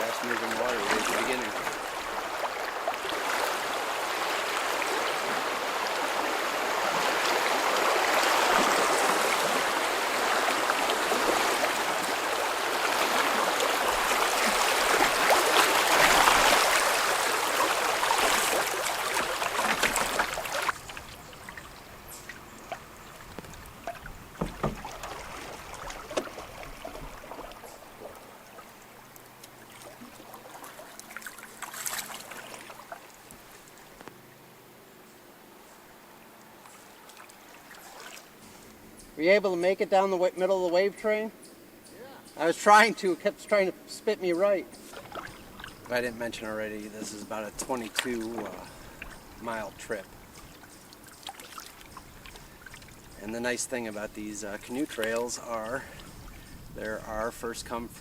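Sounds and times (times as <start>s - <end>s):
river rapid rushing: 0.0s - 21.0s
small knocks: 23.3s - 24.9s.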